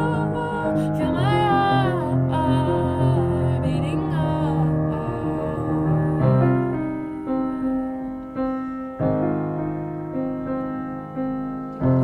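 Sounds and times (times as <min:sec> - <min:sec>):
person singing: 0:00.0 - 0:07.2
slow keyboard chords: 0:00.0 - 0:12.0.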